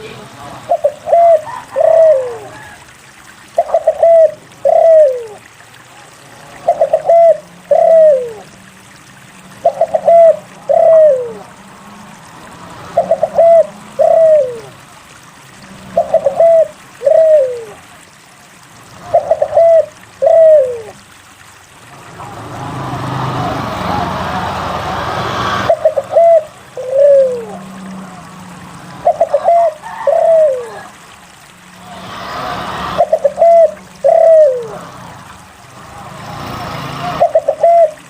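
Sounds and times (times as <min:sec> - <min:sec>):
dove cooing: 0:00.7 - 0:02.9, 0:03.6 - 0:08.6, 0:09.5 - 0:11.6, 0:12.9 - 0:14.9, 0:15.9 - 0:18.0, 0:19.0 - 0:21.0, 0:25.6 - 0:28.3, 0:28.9 - 0:31.5, 0:32.8 - 0:35.0, 0:37.0 - 0:38.0.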